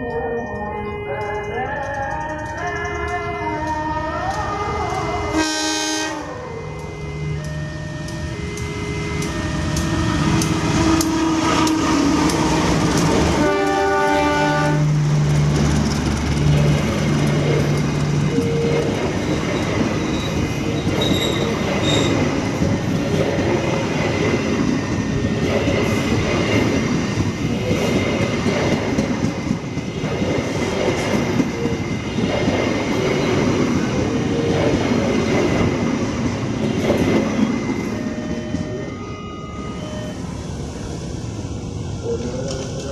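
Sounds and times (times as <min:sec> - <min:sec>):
low horn tone: 0:05.3 - 0:14.9
train wheels clacking over rail joints: 0:09.2 - 0:33.8
wheel squeal: 0:18.4 - 0:22.3.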